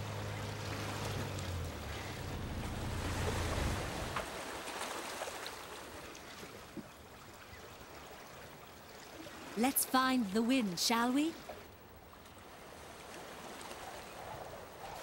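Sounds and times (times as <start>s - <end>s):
boat motor humming: 0.0s - 4.6s, 9.6s - 13.0s
water washing: 0.0s - 5.6s
wind: 0.0s - 15.0s.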